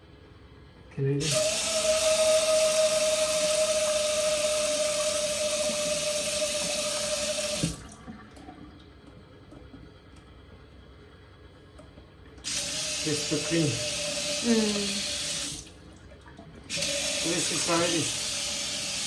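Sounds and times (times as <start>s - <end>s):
tap running into sink: 4.7s - 7.9s.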